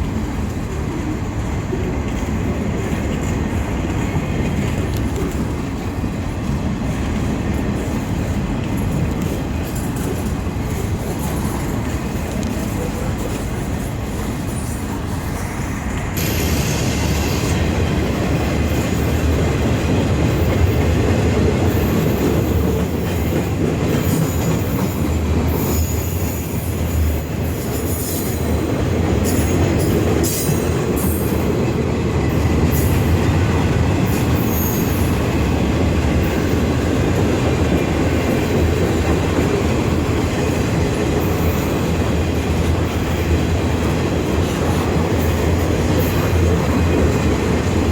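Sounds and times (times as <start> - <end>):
train wheel squeal: 12.5 - 39.3, 40.0 - 43.6.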